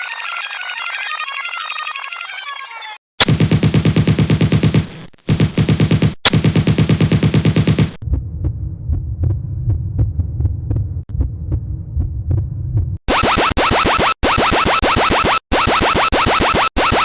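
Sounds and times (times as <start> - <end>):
fast stutter of pulses: 13.1 - 17.0.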